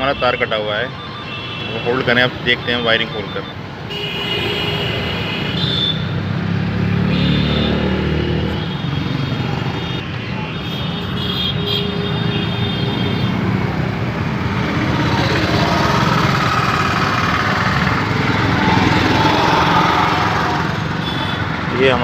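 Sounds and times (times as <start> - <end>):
engine running: 14.6 - 20.9.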